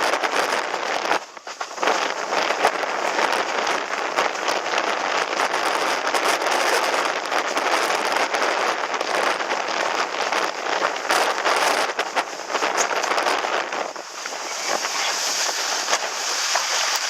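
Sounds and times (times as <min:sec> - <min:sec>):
dense crackling: 0:00.0 - 0:17.0
wind buffeting microphone: 0:00.0 - 0:17.0
water spray hissing: 0:13.8 - 0:17.0.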